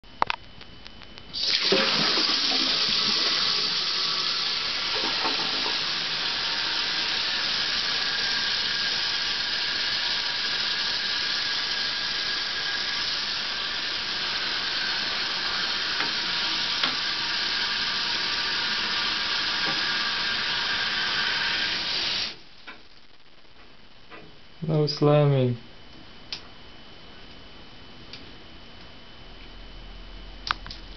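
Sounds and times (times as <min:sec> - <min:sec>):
toilet flushing: 0:01.3 - 0:22.4
toilet tank refilling hiss: 0:01.3 - 0:22.6.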